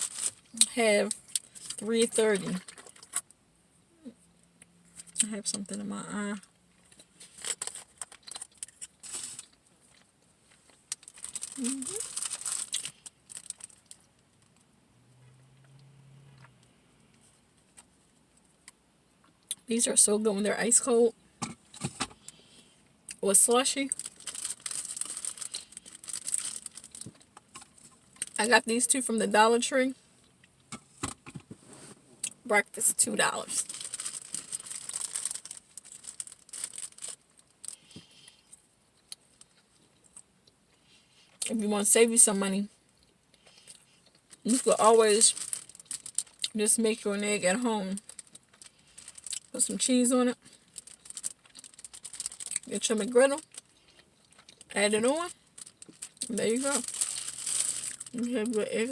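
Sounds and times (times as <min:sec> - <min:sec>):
plastic wrapper crinkling: 0:00.0 - 0:03.2, 0:06.9 - 0:14.5, 0:23.4 - 0:29.0, 0:33.1 - 0:38.1, 0:43.5 - 0:46.6, 0:47.5 - 0:58.9.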